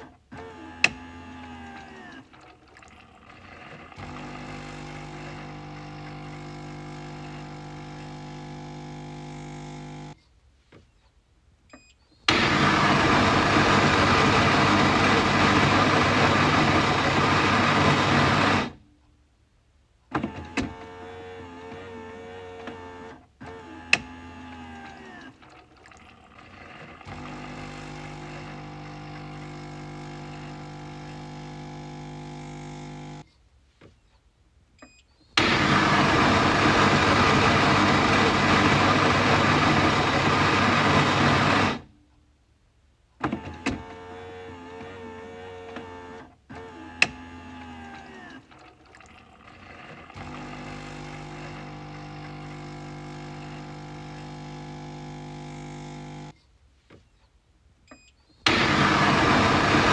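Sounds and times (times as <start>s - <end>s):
coffee machine motor hum: 0.6s - 10.2s, 12.3s - 18.8s, 25.8s - 33.2s, 35.4s - 41.9s, 43.9s - 56.3s, 58.5s - 59.9s
loud noisy burst: 35.4s - 41.8s, 58.5s - 59.9s.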